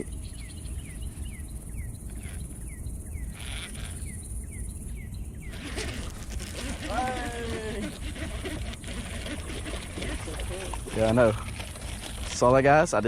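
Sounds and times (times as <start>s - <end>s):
insect buzz: 2.1s - 11.0s.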